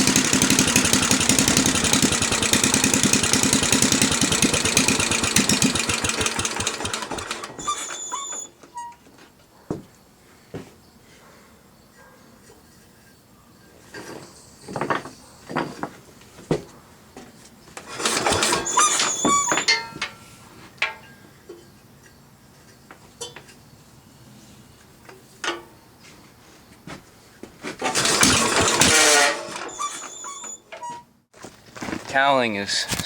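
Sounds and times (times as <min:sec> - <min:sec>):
metallic squealing and scraping: 0:07.2 - 0:09.0, 0:17.9 - 0:20.0, 0:27.8 - 0:31.0.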